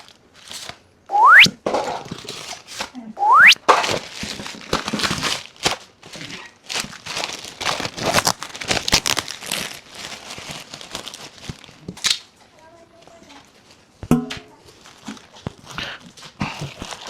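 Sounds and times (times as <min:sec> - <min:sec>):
packaging crinkling and rustling: 0:00.0 - 0:00.8, 0:01.8 - 0:03.0, 0:03.6 - 0:12.3, 0:14.6 - 0:17.0
packaging tearing: 0:00.0 - 0:00.8, 0:02.1 - 0:02.9, 0:03.6 - 0:12.3, 0:14.8 - 0:17.0.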